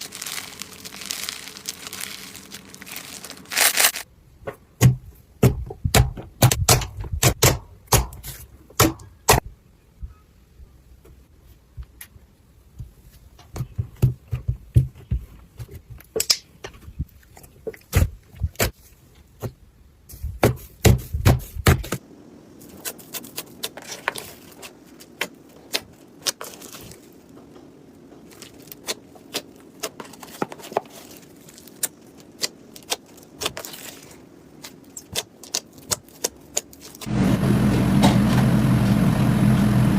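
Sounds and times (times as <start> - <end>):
steady low hum: 37.0 - 39.9.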